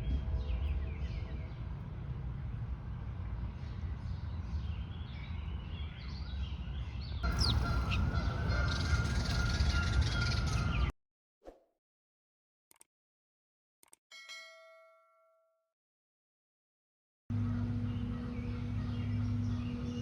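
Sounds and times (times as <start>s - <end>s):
wind rumble on microphone: 0.0s - 10.9s
birds chirping and calling: 7.2s - 10.9s.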